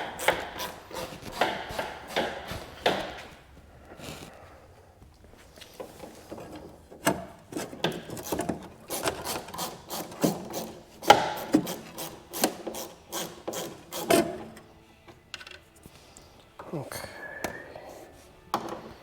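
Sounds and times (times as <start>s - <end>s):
hand tool scraping: 0.0s - 4.4s, 7.5s - 14.6s.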